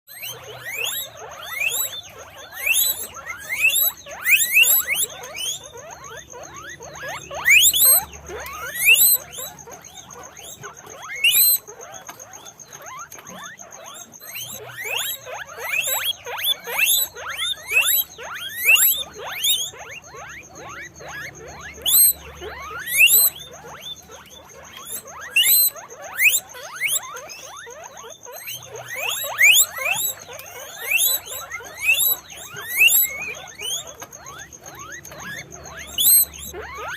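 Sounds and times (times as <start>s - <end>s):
guinea pigs squeaking: 0.1s - 36.9s.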